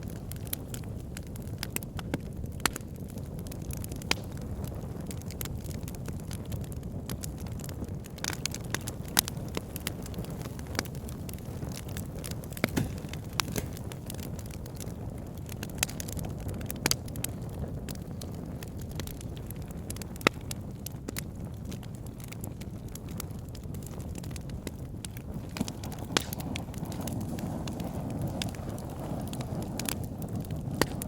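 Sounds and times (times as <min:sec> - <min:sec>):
burning wood crackling: 0:00.0 - 0:31.0
flame rushing: 0:06.3 - 0:18.4, 0:24.0 - 0:31.0.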